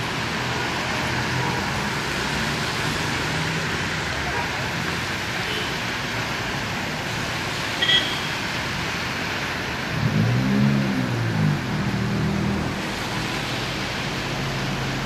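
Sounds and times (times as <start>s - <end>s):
road traffic: 0.0s - 15.0s
passing vehicle engine: 9.8s - 15.0s.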